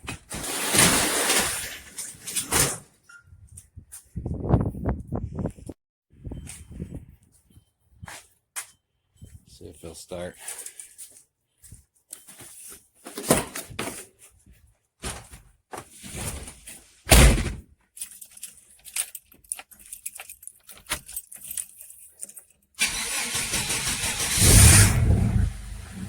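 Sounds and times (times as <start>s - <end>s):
loud thump: 17.1s - 17.6s
keys jangling: 17.9s - 22.8s
pickup truck engine starting: 22.8s - 26.0s.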